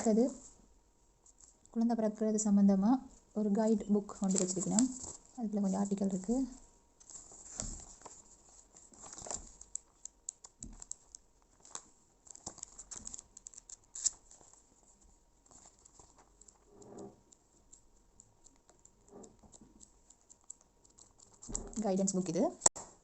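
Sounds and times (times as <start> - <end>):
book pages ticking and tapping: 4.1 - 6.3, 7.0 - 22.9
paper rustling: 4.1 - 16.7.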